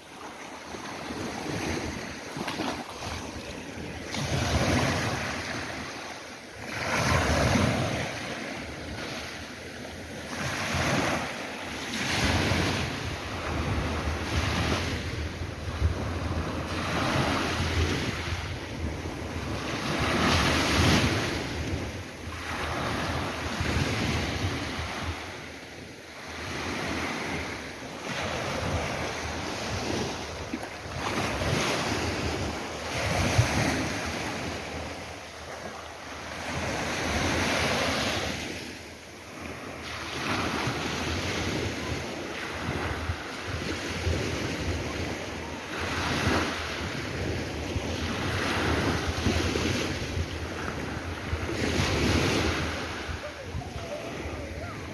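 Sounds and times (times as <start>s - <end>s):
sea waves breaking: 0.0s - 54.9s
wind buffeting microphone: 12.1s - 25.4s.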